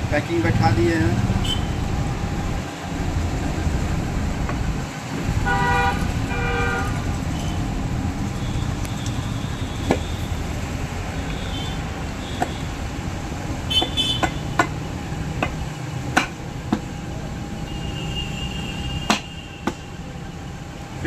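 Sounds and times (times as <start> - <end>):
traffic rumble: 0.0 - 21.0
vehicle horn honking: 1.4 - 1.8, 5.4 - 7.6, 13.7 - 14.4, 17.6 - 19.9.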